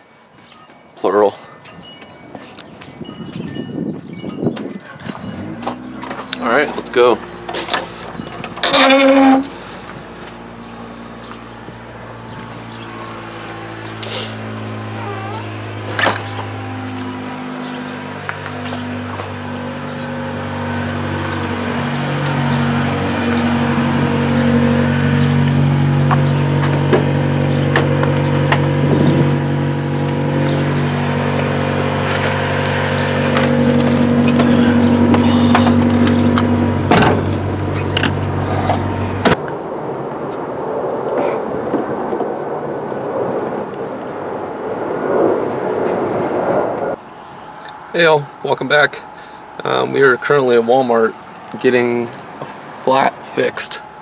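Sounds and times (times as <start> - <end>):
vehicle engine humming: 4.9 - 54.0
rustling and scraping: 5.0 - 10.7.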